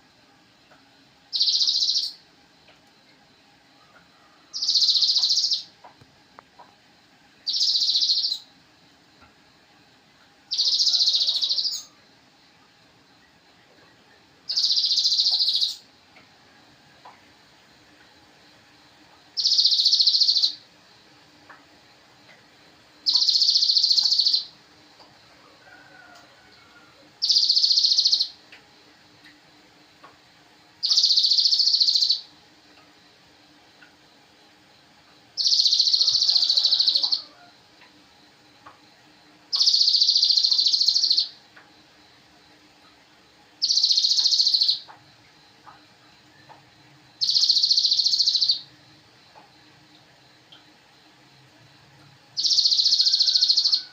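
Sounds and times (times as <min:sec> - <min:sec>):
bird chattering call: 0:10.5 - 0:11.9, 0:35.4 - 0:37.2, 0:43.6 - 0:44.8, 0:47.2 - 0:48.6, 0:52.4 - 0:53.8.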